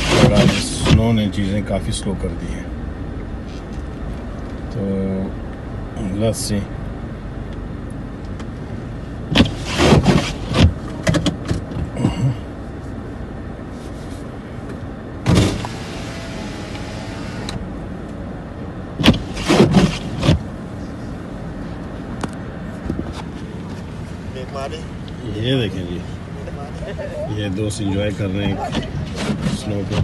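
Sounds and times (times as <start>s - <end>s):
traffic hiss: 12.2s - 18.2s
short bursts of noise: 15.3s - 17.7s.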